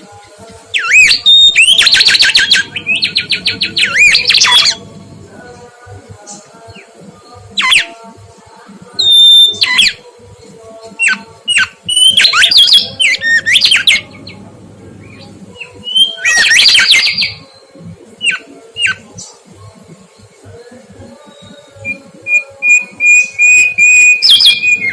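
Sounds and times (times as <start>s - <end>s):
bird whistling song: 0.8s - 5.0s, 7.6s - 7.9s, 9.0s - 10.0s, 11.0s - 14.4s, 15.0s - 19.1s, 21.3s - 24.9s.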